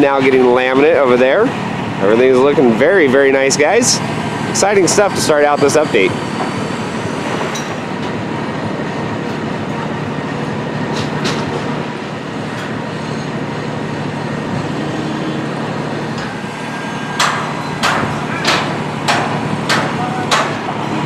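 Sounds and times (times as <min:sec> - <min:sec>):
construction machinery rumbling: 0:00.0 - 0:21.0
hammer-like strikes: 0:14.5 - 0:21.0.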